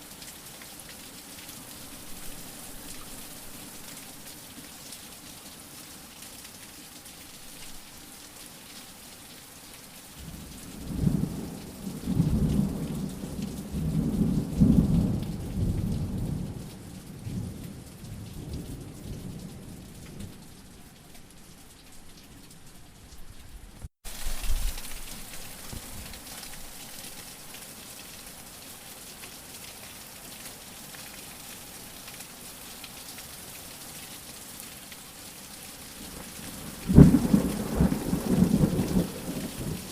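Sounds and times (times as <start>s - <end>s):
steady rain falling: 0.0s - 39.9s
low roll of thunder: 36.5s - 39.9s.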